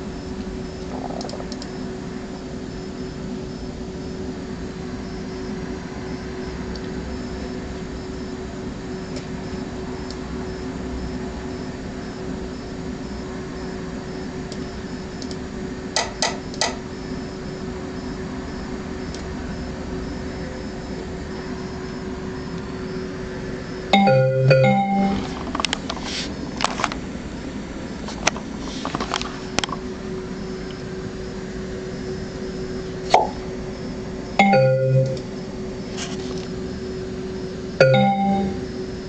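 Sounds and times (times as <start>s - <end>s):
steady electrical hum: 0.0s - 39.0s
electronic chime: 23.9s - 25.3s, 34.4s - 35.2s, 37.8s - 38.7s.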